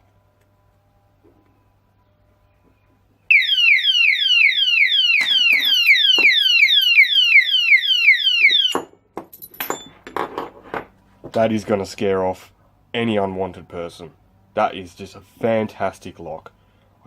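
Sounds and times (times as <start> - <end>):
electronic alarm siren wailing: 3.3 - 8.8.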